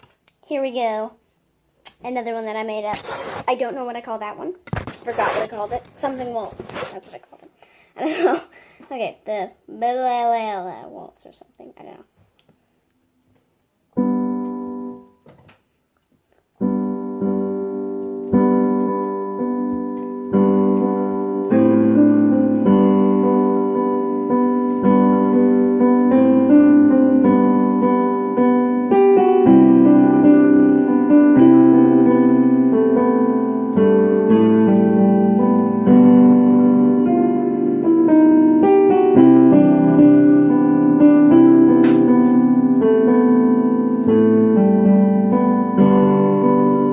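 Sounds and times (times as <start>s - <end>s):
piano waltz: 16.6s - 46.9s.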